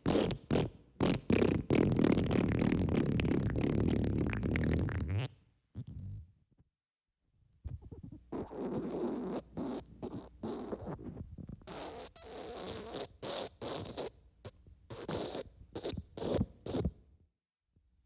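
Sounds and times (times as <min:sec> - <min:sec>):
wet fart sound effect: 0:00.0 - 0:06.3, 0:07.8 - 0:11.0.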